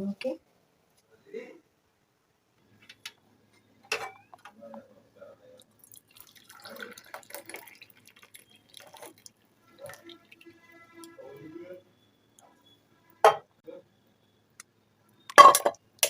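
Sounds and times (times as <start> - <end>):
liquid dripping: 5.4 - 11.2
tea pouring into cups: 5.4 - 11.2.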